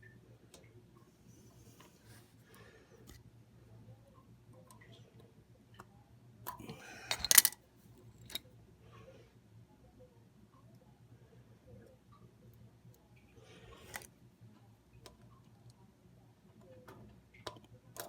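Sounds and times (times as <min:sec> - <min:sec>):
faint low hum: 0:00.0 - 0:18.0
small metal clicks and rattling: 0:06.5 - 0:08.5.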